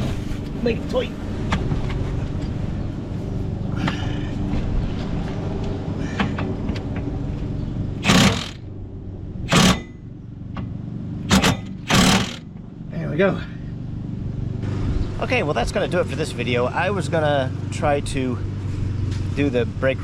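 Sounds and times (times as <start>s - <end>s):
steady low hum: 1.2s - 14.7s
impact wrench bursts: 8.0s - 8.7s, 9.5s - 10.1s, 11.2s - 12.6s.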